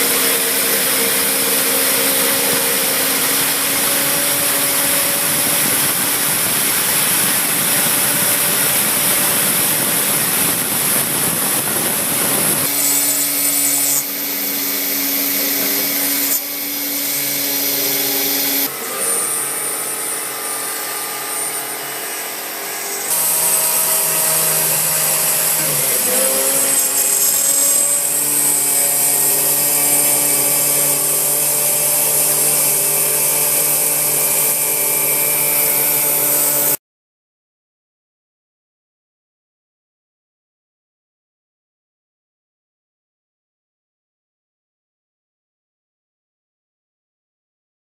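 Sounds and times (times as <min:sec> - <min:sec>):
milling machine cutting metal: 0:00.0 - 0:36.8.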